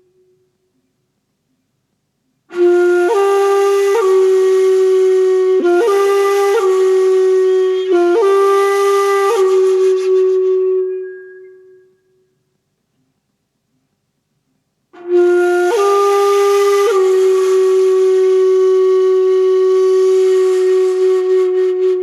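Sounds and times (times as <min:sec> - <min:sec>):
flute-like melody: 0:02.5 - 0:12.3, 0:15.0 - 0:22.0.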